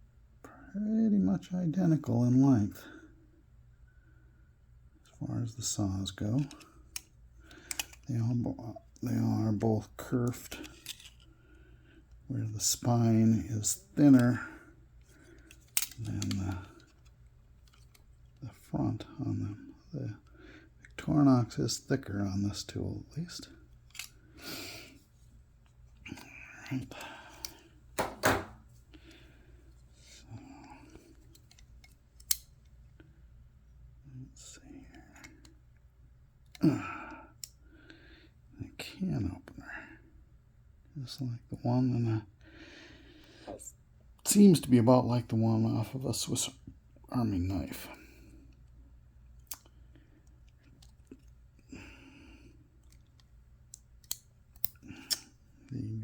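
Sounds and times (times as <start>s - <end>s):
multitool metal clicks: 15.4s - 16.7s, 31.3s - 32.5s, 52.8s - 55.2s.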